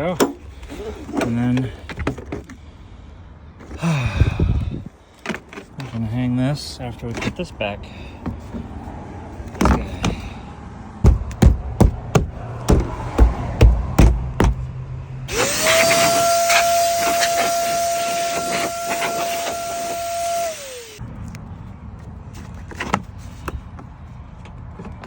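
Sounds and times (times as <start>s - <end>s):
vacuum cleaner motor whine: 15.3s - 21.0s.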